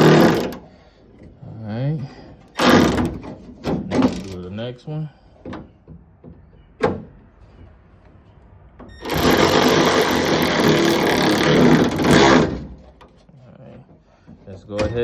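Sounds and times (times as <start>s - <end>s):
cordless electric ratchet spinning: 0.0s - 0.6s, 9.0s - 12.6s.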